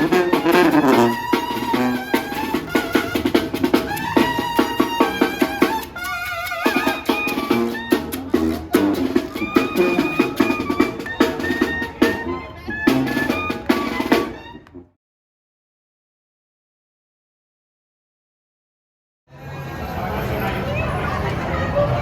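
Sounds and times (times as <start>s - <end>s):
music with drum kit beat: 0.0s - 6.0s, 6.7s - 14.4s.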